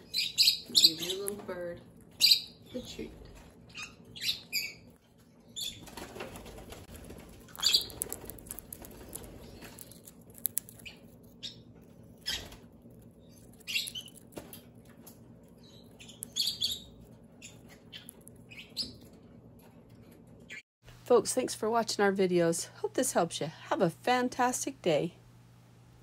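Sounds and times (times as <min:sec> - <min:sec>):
parrot chirping: 0:00.0 - 0:01.4, 0:02.0 - 0:05.9, 0:07.3 - 0:14.6, 0:15.5 - 0:19.2
wings flapping: 0:05.6 - 0:11.0, 0:12.2 - 0:12.7.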